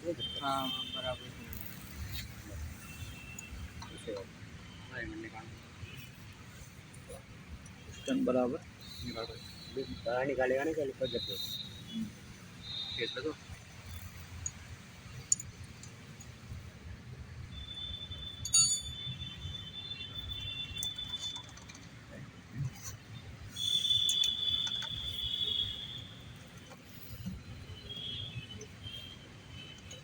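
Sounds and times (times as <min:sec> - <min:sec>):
metal tools clinking on metal parts: 0:18.4 - 0:19.0.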